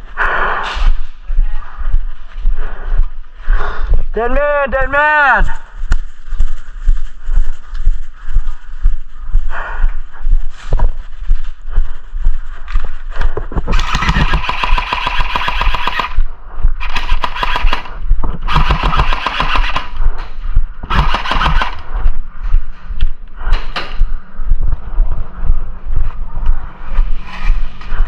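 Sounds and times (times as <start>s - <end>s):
airsoft guns firing bursts: 13.7s - 16.2s, 16.8s - 20.0s, 20.8s - 21.8s.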